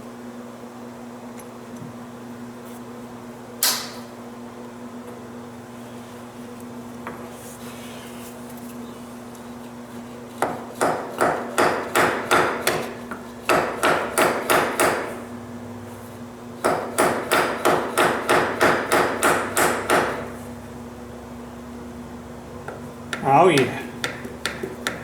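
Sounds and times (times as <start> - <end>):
steady hum: 10.0 - 25.0.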